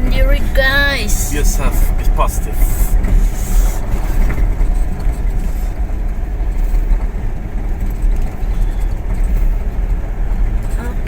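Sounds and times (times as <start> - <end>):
truck engine and road rumble: 0.0 - 11.0.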